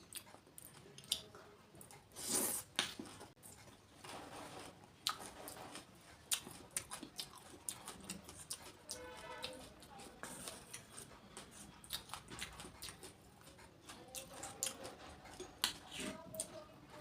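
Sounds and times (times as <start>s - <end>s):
wet chewing: 5.0s - 16.6s.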